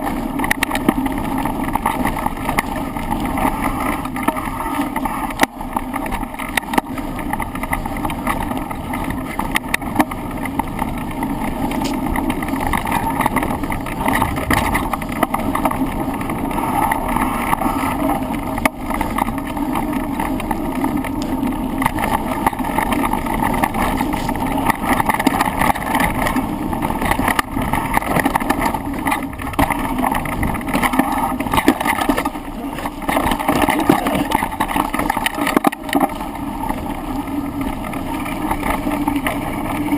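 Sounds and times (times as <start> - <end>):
bike knocks and rattles: 0.0 - 39.9
rushing wind noise: 0.0 - 39.9.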